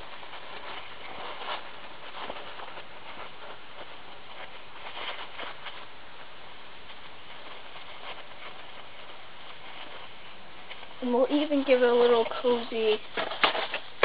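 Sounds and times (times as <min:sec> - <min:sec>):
paper towels rustling: 0:00.0 - 0:14.0.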